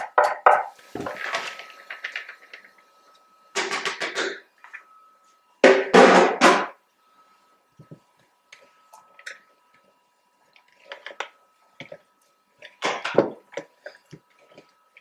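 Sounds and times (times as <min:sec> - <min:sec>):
faint steady whine: 0:00.7 - 0:15.0
utensils and dishes clattering: 0:03.6 - 0:04.4.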